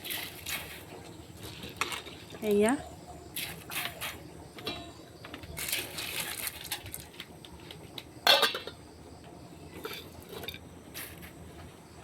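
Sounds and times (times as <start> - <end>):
metal clank: 4.6 - 5.0, 8.2 - 8.8.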